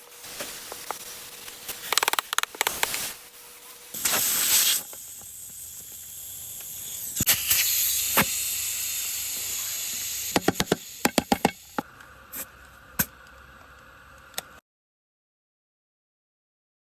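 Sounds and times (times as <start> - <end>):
compressed air hissing: 0.2 - 3.3, 3.9 - 13.2.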